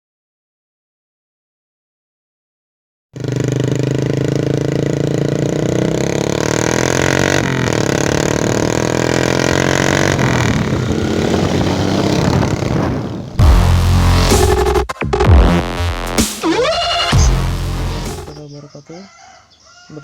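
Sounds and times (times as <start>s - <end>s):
motorcycle engine running: 3.2s - 18.5s.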